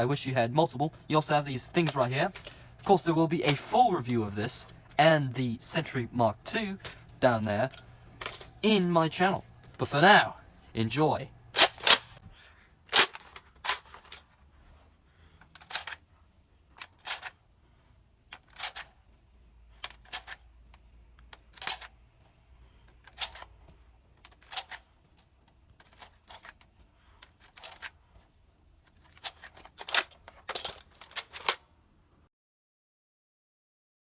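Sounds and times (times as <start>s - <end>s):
toy gun plastic clacks: 1.7s - 4.7s, 6.5s - 8.9s, 11.6s - 12.2s, 12.9s - 14.3s, 15.4s - 16.0s, 16.8s - 17.4s, 18.3s - 18.9s, 19.8s - 22.0s, 22.9s - 23.6s, 24.2s - 24.9s, 25.7s - 28.0s, 28.8s - 31.6s.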